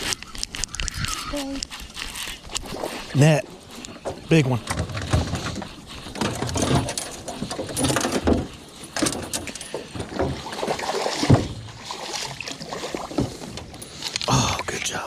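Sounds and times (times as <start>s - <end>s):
water splashing: 0.0s - 15.0s
net and fish knocking on boat: 4.0s - 13.8s.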